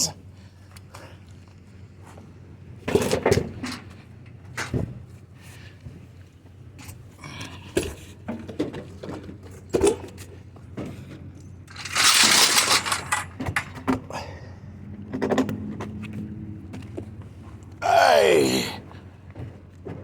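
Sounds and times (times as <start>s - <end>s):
loud scraping crash: 11.7s - 13.7s
scrap metal knocking and clattering: 11.7s - 14.0s.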